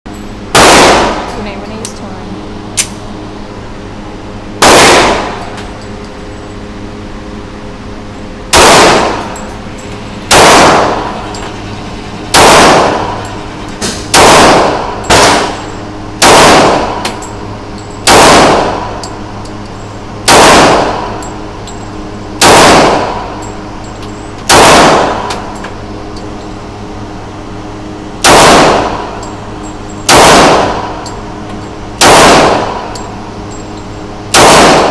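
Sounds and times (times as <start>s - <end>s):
steady low hum: 0.1s - 34.9s
gunshots: 0.5s - 1.4s, 4.6s - 5.4s, 8.5s - 9.3s, 10.3s - 11.3s, 12.3s - 13.2s, 13.8s - 15.6s, 16.2s - 17.0s, 18.0s - 19.0s, 20.2s - 21.2s, 22.4s - 23.3s, 24.5s - 25.4s, 28.2s - 29.2s, 30.1s - 31.0s, 32.0s - 32.9s, 34.3s - 34.9s.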